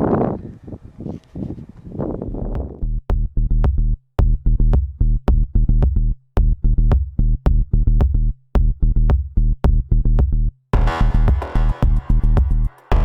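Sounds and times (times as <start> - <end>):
electronic music with heavy bass: 3.1 - 13.0.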